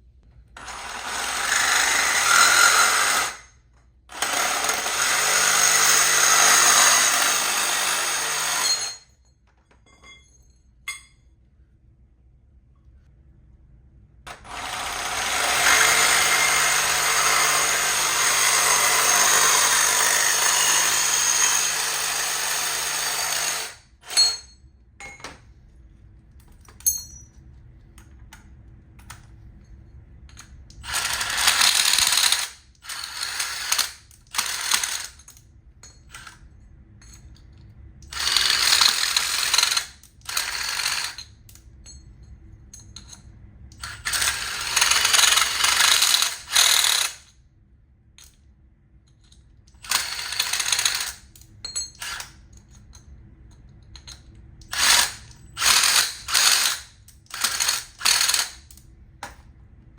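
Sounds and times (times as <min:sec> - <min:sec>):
power tool running: 0:00.6 - 0:03.4, 0:04.1 - 0:08.8, 0:14.3 - 0:24.2, 0:30.8 - 0:35.1, 0:54.7 - 0:58.6.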